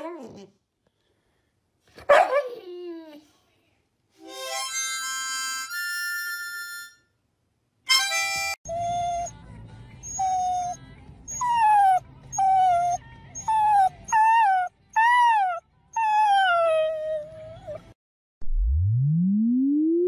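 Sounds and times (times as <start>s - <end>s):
dog whining: 0.0s - 0.6s, 8.7s - 9.4s, 10.0s - 18.0s.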